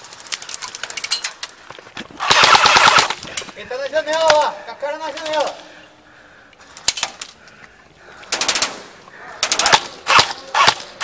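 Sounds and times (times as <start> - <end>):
airsoft gun bursts: 2.2 - 3.2, 9.4 - 11.0.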